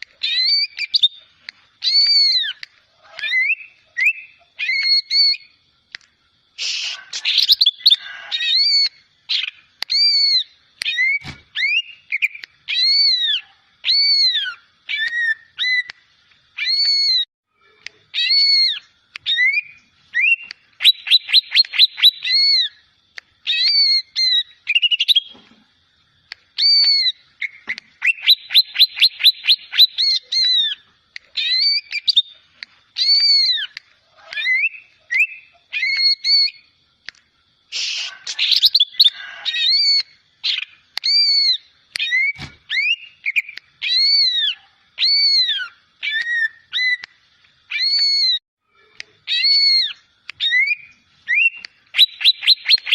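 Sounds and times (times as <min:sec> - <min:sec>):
bird whistling song: 0:00.0 - 0:05.6, 0:06.6 - 0:16.0, 0:16.6 - 0:17.3, 0:18.1 - 0:22.8, 0:23.4 - 0:25.4, 0:26.6 - 0:36.7, 0:37.7 - 0:48.4, 0:49.2 - 0:52.9
harsh scratchy bird call: 0:06.6 - 0:15.9, 0:16.6 - 0:22.8, 0:37.7 - 0:47.0, 0:49.2 - 0:52.9.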